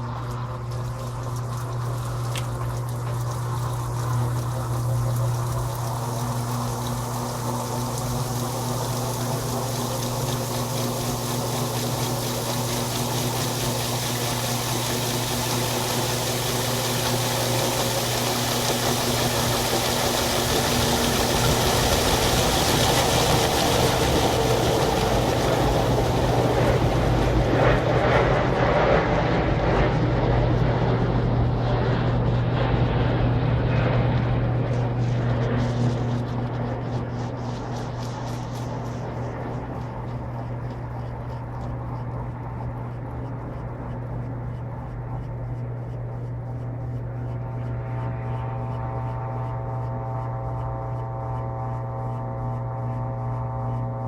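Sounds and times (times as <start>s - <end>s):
whooshing water: 0.0s - 29.6s
washing machine motor hum: 0.0s - 54.0s.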